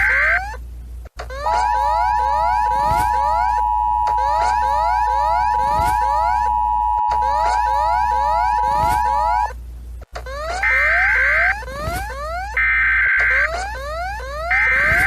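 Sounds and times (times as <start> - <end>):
low hum: 1.0 - 10.4
two-tone alert signal: 1.3 - 9.5.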